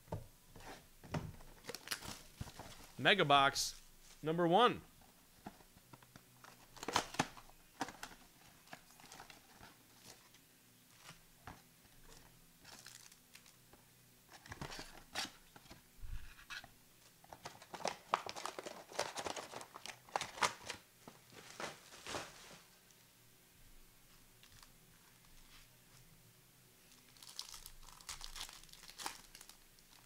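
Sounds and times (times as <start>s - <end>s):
plastic wrapping tearing and crinkling: 1.6s - 3.0s, 12.6s - 13.6s, 17.4s - 20.8s, 26.9s - 30.0s.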